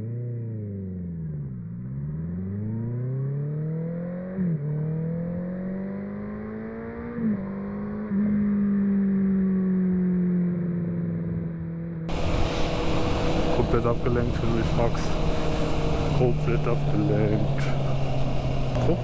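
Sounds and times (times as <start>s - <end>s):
motorcycle engine accelerating: 0.0s - 19.0s
gear upshifts: 12.1s - 19.0s.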